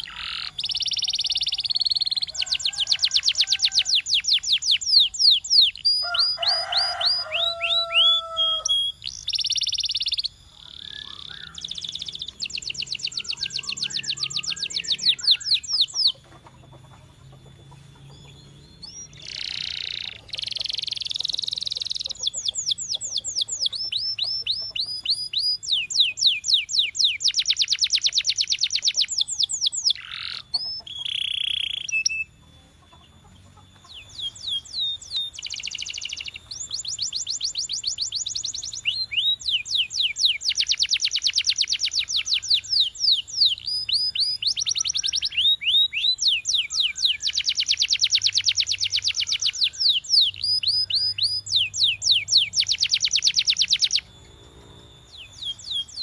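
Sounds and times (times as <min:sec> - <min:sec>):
canary singing: 0:00.0 - 0:56.0.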